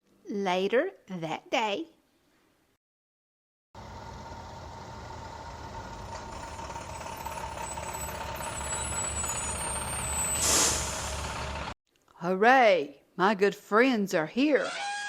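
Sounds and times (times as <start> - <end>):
bus engine running: 3.8 - 11.8
air brakes hissing: 6.5 - 11.7.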